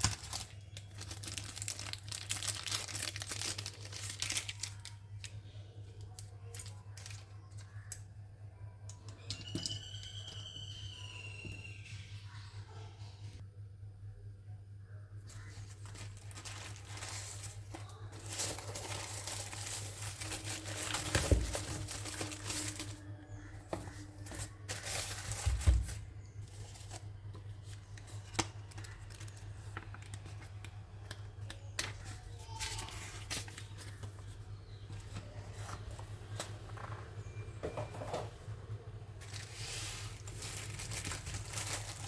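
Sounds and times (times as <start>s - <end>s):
packaging crinkling and tearing: 0.0s - 8.0s, 15.3s - 36.4s, 39.2s - 42.0s.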